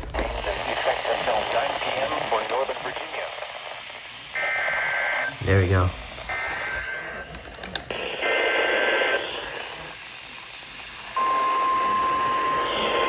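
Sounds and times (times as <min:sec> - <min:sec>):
radio hiss: 0:00.0 - 0:13.0
steady warning alarm tone: 0:04.4 - 0:13.0.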